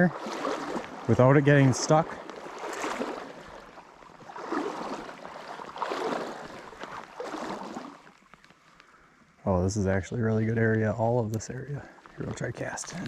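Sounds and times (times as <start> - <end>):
stream rushing: 0.0 - 8.1
water sloshing from wading: 0.0 - 9.2.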